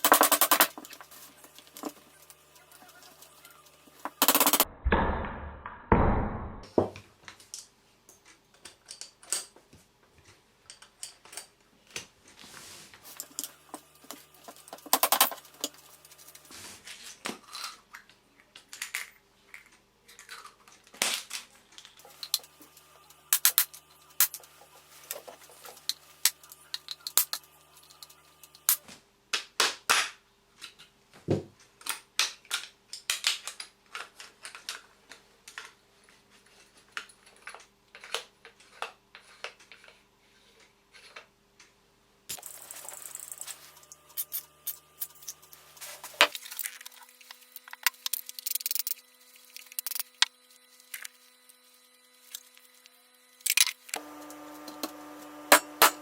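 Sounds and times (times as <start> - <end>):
faint steady hum: 21.9 - 28.8.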